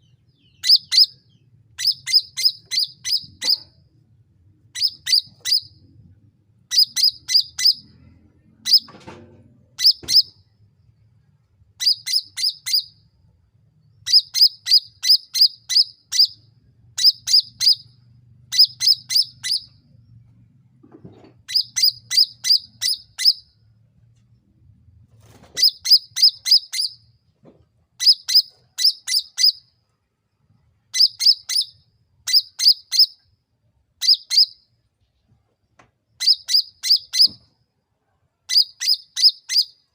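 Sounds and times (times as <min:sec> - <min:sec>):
songbird chirping in bursts: 0:00.0 - 0:03.8, 0:04.6 - 0:05.9, 0:06.7 - 0:09.0, 0:09.8 - 0:10.6, 0:11.8 - 0:13.1, 0:13.8 - 0:20.2, 0:21.4 - 0:23.7, 0:25.3 - 0:27.2, 0:28.0 - 0:29.8, 0:30.8 - 0:33.3, 0:34.0 - 0:34.8, 0:36.1 - 0:37.6, 0:38.4 - 0:39.9.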